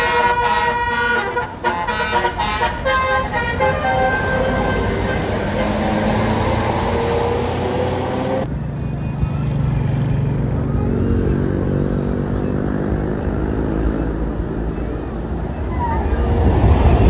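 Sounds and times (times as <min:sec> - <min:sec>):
bus multi-tone horn: 0:00.0 - 0:08.5
bus engine rumbling: 0:00.0 - 0:17.0.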